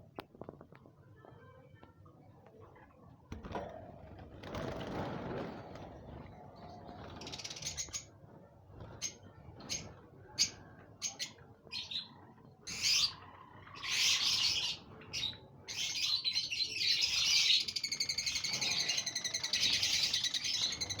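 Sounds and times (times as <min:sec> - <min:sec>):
bird chicks chirping: 0:06.7 - 0:08.2, 0:09.0 - 0:21.0.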